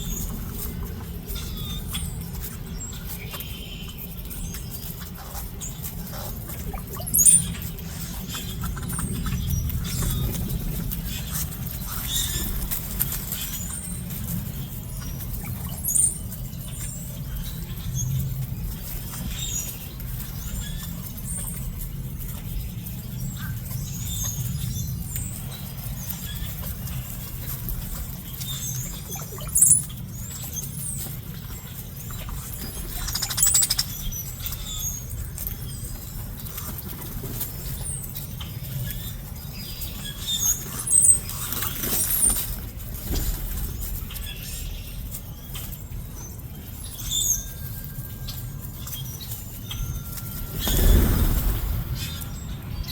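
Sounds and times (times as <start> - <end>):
steady low rumble: 0.0 - 3.3, 4.1 - 29.0, 49.3 - 52.9
small birds chirping: 0.0 - 52.9.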